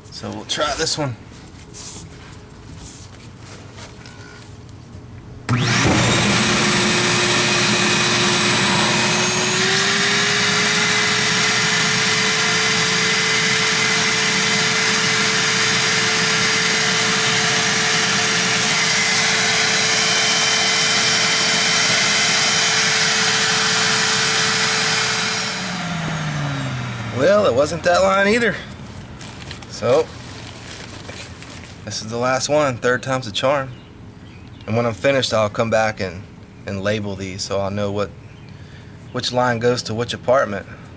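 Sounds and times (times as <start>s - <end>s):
vacuum motor winding down: 5.5s - 28.5s
wet dry vacuum running: 5.5s - 29.6s.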